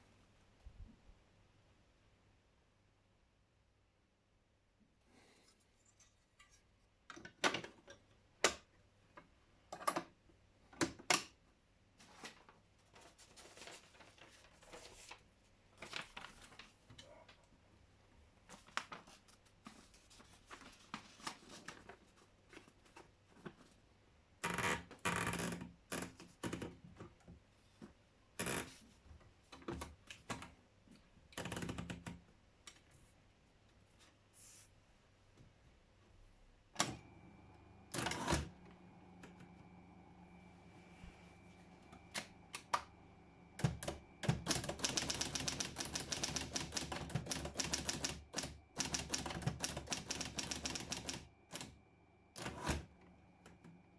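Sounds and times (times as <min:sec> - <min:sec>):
typewriter clacking: 0:43.6 - 0:51.7.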